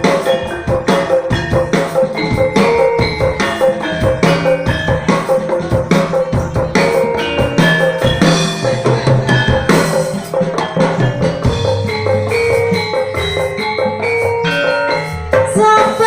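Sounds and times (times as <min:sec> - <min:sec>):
hand drums beating: 0:00.0 - 0:16.0
tuned metal gongs: 0:00.0 - 0:16.0.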